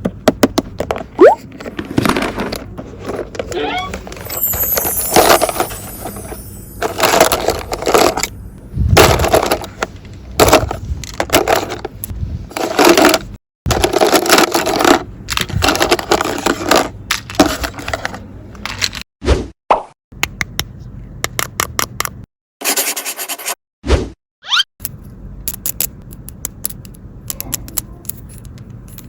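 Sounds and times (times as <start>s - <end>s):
plastic toy pieces clacking: 24.8s - 29.0s.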